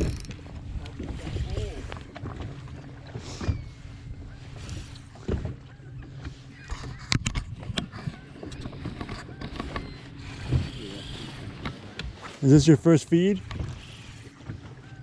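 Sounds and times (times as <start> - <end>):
boat motor running: 0.0 - 15.0.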